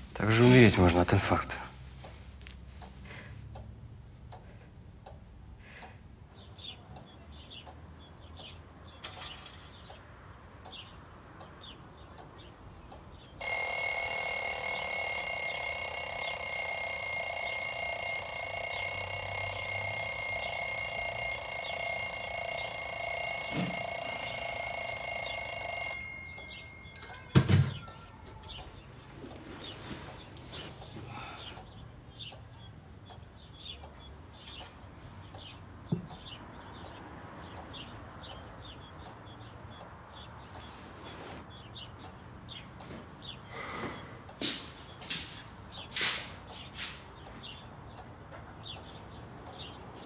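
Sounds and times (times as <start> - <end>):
bell ringing: 13.4 - 28.6.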